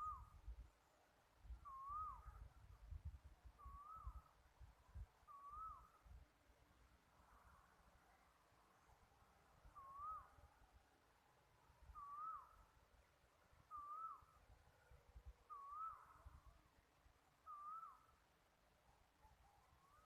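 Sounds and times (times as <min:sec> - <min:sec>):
bird whistled call: 0:00.0 - 0:00.3, 0:01.6 - 0:02.4, 0:03.6 - 0:04.3, 0:05.3 - 0:06.0, 0:09.7 - 0:10.4, 0:11.9 - 0:12.6, 0:13.7 - 0:14.4, 0:15.5 - 0:16.3, 0:17.4 - 0:18.1.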